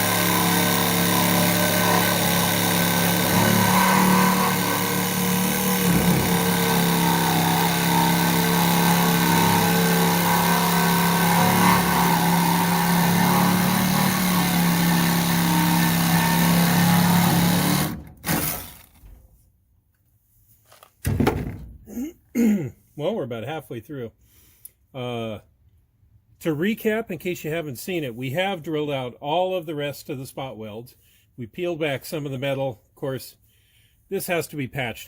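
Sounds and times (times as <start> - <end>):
power tool cutting metal: 0.0 - 18.9.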